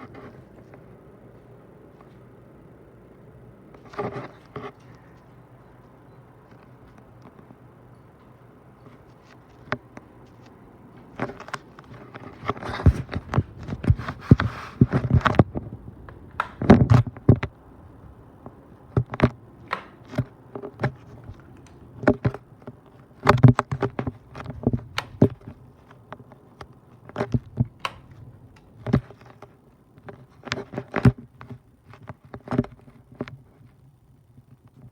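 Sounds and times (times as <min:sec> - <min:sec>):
ceiling fan motor humming: 0:00.0 - 0:34.9
irregular clicks and knocks: 0:09.2 - 0:33.4.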